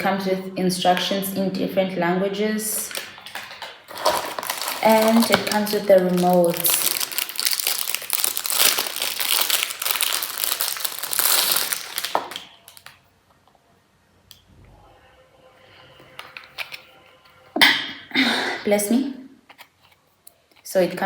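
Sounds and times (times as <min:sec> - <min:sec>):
packaging crinkling: 0:02.8 - 0:13.1.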